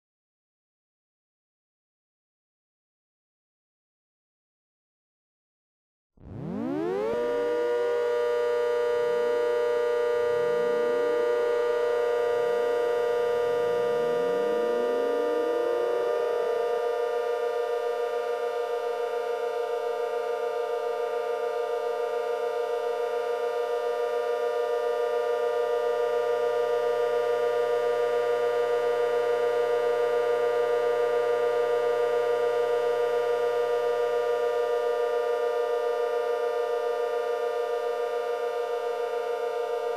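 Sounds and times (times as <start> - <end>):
warning sirens wailing: 6.3 - 19.1.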